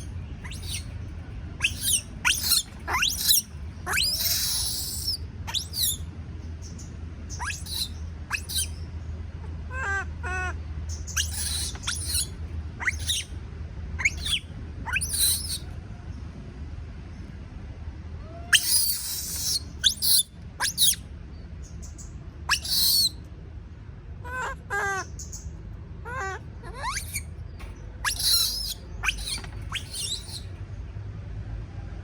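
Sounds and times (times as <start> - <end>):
baby monkey screaming: 0.0 - 0.9, 1.6 - 6.1, 7.3 - 8.8, 9.7 - 13.4, 14.0 - 15.7, 18.2 - 21.0, 22.5 - 23.2, 24.2 - 25.3, 26.0 - 27.4, 28.0 - 30.6
steady low hum: 0.0 - 32.0.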